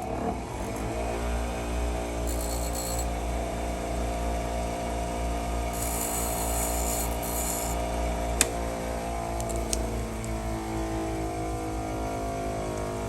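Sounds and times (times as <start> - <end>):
file rasping across a key: 5.8 - 7.8.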